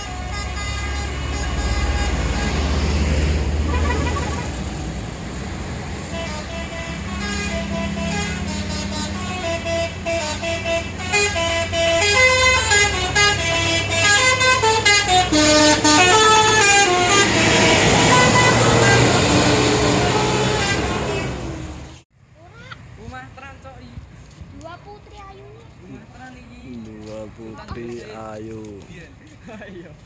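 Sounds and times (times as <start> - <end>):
musical bus horn melody: 0.0 - 4.9, 6.0 - 22.0
bus engine running: 0.0 - 23.4.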